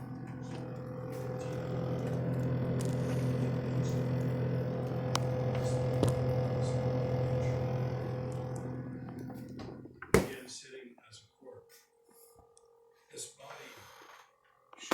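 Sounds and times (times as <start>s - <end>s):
refrigerator humming: 0.0s - 10.4s.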